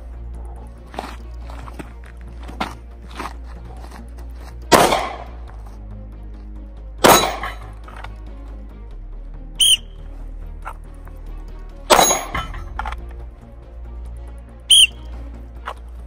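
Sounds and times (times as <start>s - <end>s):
pistol shots: 4.7s - 5.3s, 7.0s - 7.6s
metallic clang of steel plate: 7.0s - 7.7s, 11.9s - 12.7s
sharp whistle blast: 9.6s - 10.0s, 14.7s - 15.1s.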